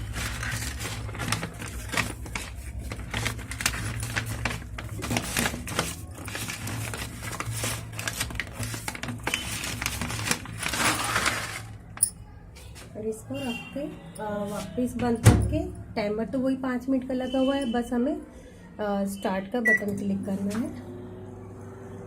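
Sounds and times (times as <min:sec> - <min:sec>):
paper bag crinkling: 0:00.0 - 0:12.0.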